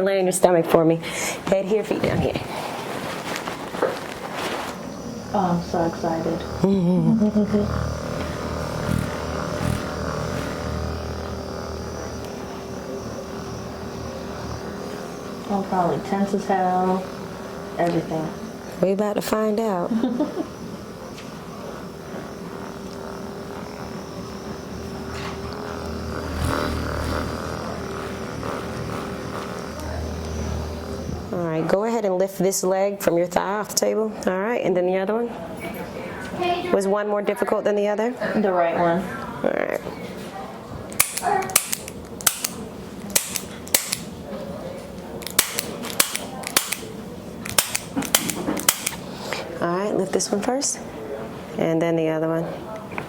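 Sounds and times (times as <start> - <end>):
small motor humming: 4.2 - 31.7
adjusting instrument clicks: 40.9 - 44.1, 45.2 - 49.0.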